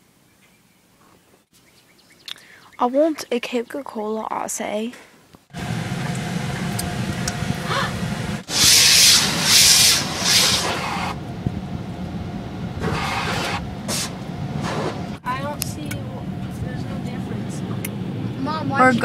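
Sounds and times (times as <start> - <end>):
engine rumble: 5.4 - 19.0
loud hissing bursts: 5.5 - 11.2, 12.8 - 15.2.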